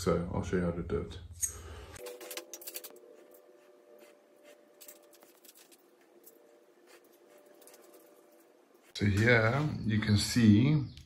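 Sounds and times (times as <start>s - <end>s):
handling clicks and scratches: 4.8s - 8.5s.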